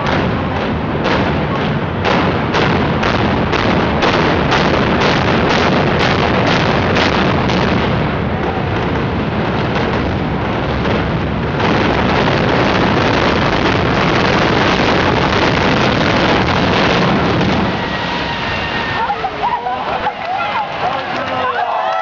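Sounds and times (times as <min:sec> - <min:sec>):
building collapsing rumble: 0:00.0 - 0:22.0.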